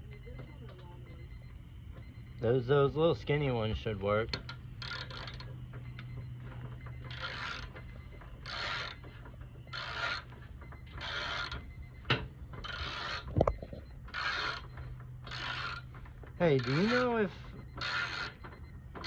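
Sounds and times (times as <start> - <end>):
low hum: 0.0 - 19.0.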